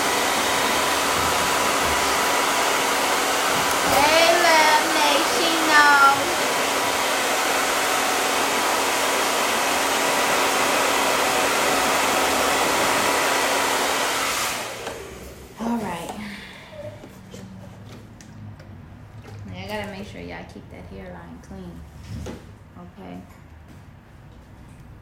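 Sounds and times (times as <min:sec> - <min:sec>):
hair dryer blowing: 0:00.0 - 0:17.0.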